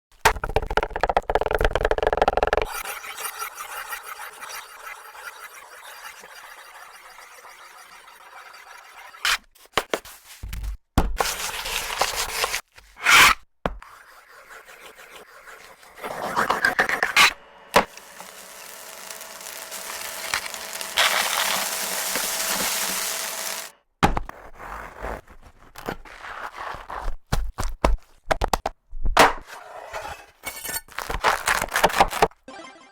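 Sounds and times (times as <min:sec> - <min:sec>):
scraping and rubbing on surface: 0:02.6 - 0:10.5, 0:11.2 - 0:23.7
steady hiss: 0:17.9 - 0:23.7.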